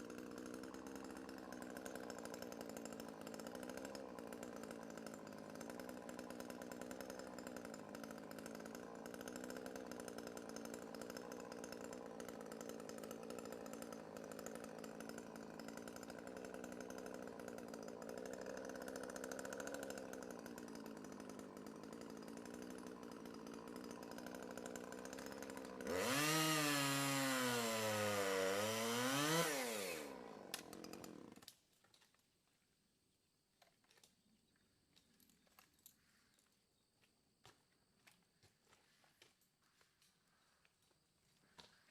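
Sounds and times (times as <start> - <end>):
chainsaw cutting wood: 0.0 - 32.2, 33.6 - 34.2.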